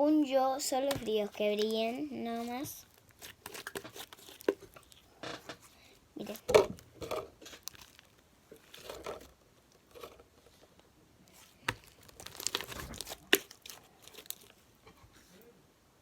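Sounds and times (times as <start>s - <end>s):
slime squished and pulled apart: 11.7s - 14.5s.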